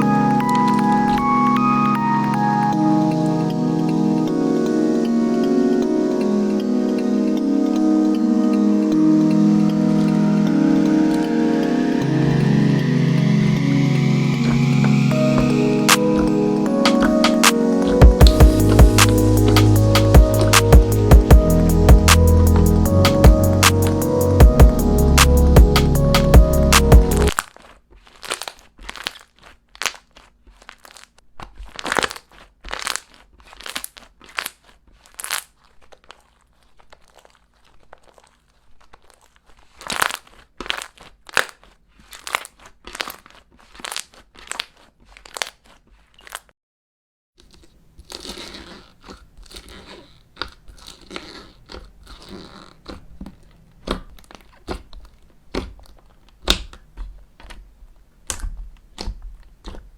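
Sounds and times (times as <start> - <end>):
slime squishing: 58.3 - 59.9.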